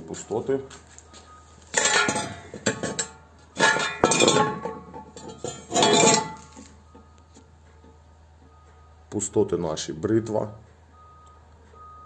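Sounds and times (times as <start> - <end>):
steel cores clanging together: 1.7 - 7.1.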